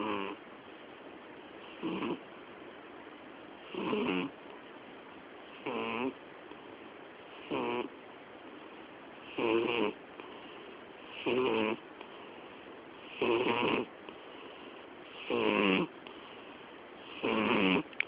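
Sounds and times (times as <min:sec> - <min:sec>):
cat snoring: 0:00.0 - 0:00.4, 0:01.6 - 0:02.2, 0:03.7 - 0:04.4, 0:05.6 - 0:06.2, 0:07.4 - 0:07.9, 0:09.2 - 0:10.0, 0:11.1 - 0:11.8, 0:13.0 - 0:13.9, 0:15.1 - 0:16.0, 0:17.0 - 0:17.9.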